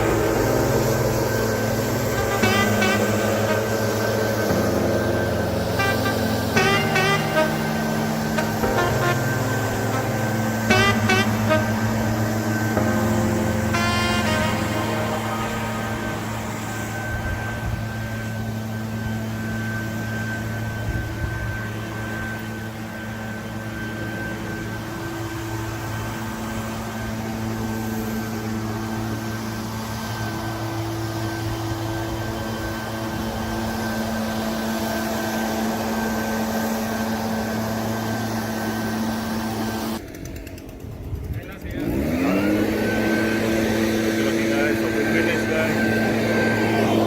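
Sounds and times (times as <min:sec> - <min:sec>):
engine humming: 0:00.0 - 0:47.0
thin high whine: 0:00.0 - 0:47.0.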